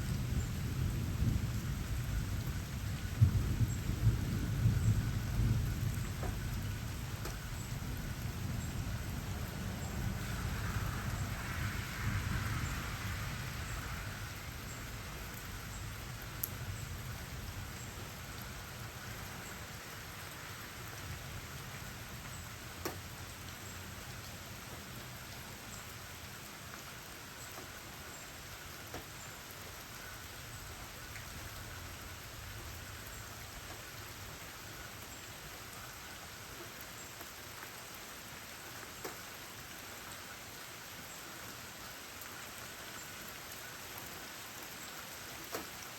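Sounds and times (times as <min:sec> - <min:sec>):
steady rain falling: 0:00.0 - 0:45.9
raindrop taps: 0:06.1 - 0:06.4, 0:07.2 - 0:07.5, 0:22.8 - 0:23.1, 0:28.9 - 0:29.2, 0:39.0 - 0:39.2, 0:45.4 - 0:45.8.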